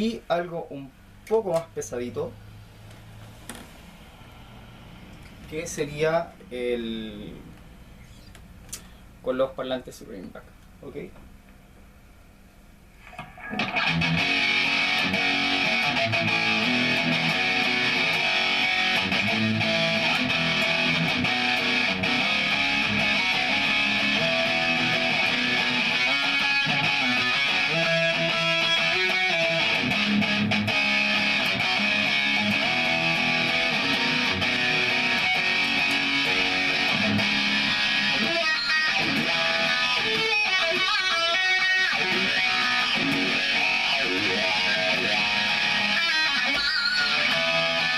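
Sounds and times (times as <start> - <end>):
distorted electric guitar riffs: 13.1 - 47.9.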